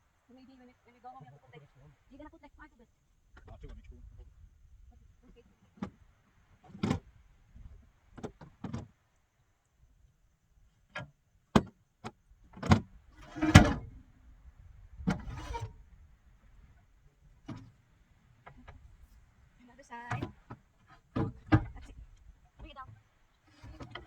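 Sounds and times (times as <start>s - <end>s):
rustling scrapes: 13.2s - 14.0s, 15.1s - 15.9s.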